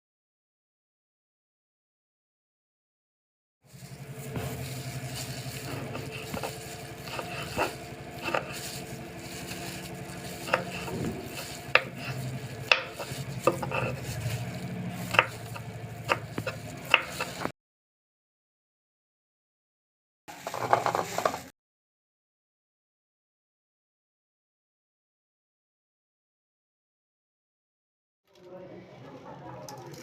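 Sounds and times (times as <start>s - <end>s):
low hum: 3.7s - 17.5s
spoon stirring food in bowl: 3.7s - 17.5s.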